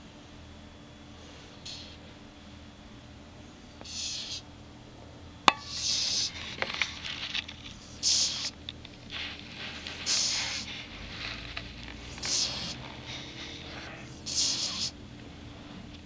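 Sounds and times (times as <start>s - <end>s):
dog snoring: 7.8s - 15.0s.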